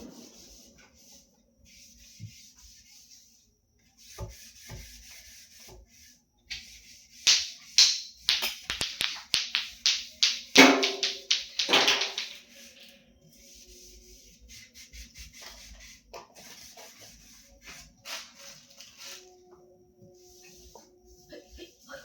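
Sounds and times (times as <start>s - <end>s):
hard objects knocking and clattering: 7.3s - 12.5s.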